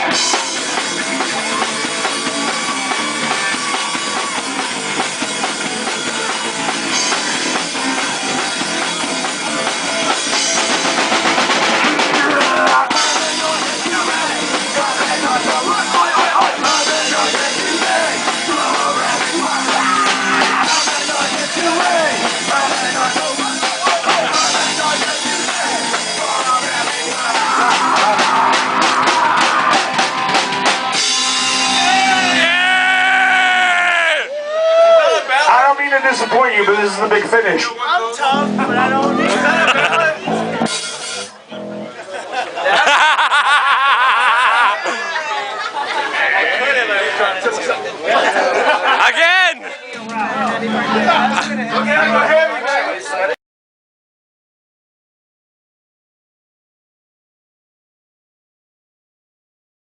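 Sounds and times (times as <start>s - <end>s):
fast drum hits: 0.0s - 32.5s
punk rock band playing: 0.0s - 53.4s.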